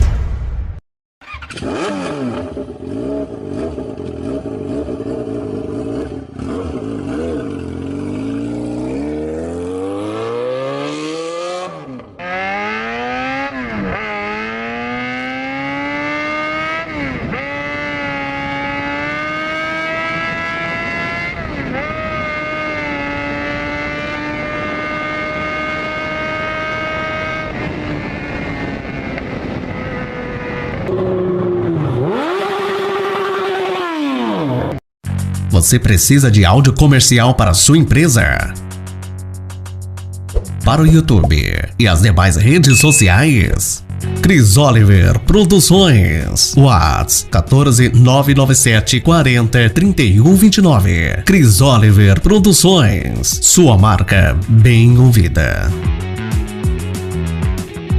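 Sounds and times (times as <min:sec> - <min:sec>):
motorcycle engine accelerating: 0:01.2 - 0:35.4.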